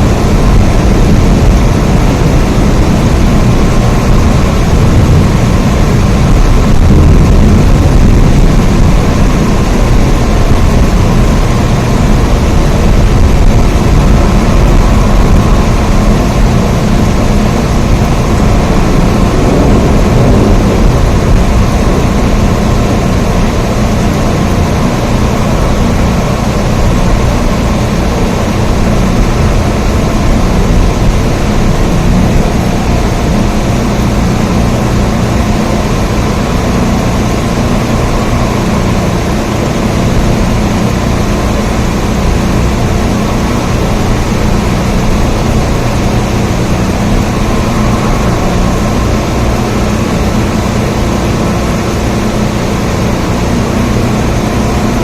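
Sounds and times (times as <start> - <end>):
heavy rain: 0.0 - 55.0.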